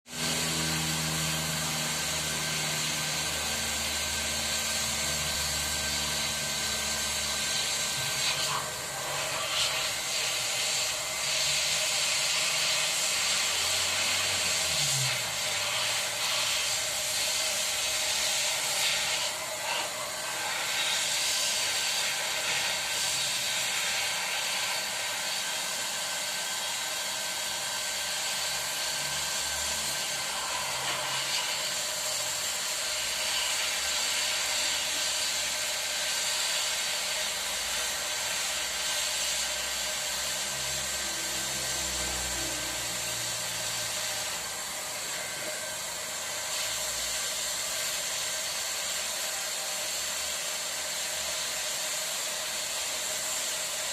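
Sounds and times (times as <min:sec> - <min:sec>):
power tool motor running: 0:00.1 - 0:53.9.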